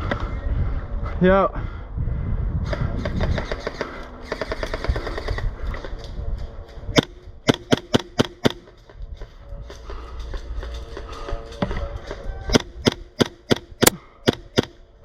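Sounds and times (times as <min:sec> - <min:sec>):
airsoft guns firing: 0:07.0 - 0:08.8, 0:12.5 - 0:14.8.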